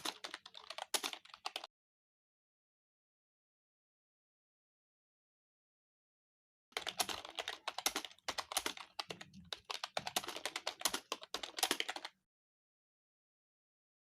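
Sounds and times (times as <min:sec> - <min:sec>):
typing on computer keyboard: 0:00.0 - 0:01.7, 0:06.8 - 0:12.2.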